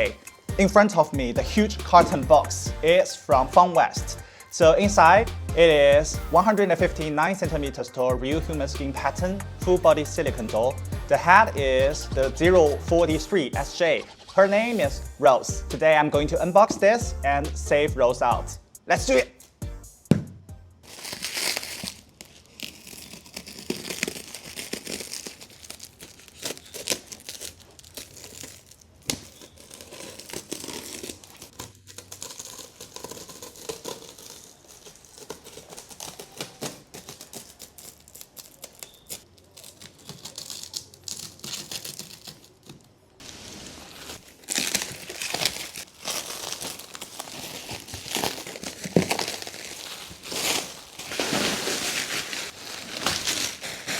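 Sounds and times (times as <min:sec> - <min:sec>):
plastic film tearing and crumpling: 0:20.8 - 0:53.9.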